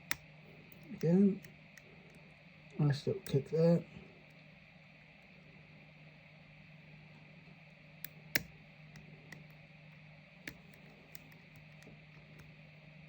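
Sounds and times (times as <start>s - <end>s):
faint steady hum: 0.0s - 13.0s
lock pick clicks: 8.0s - 9.5s.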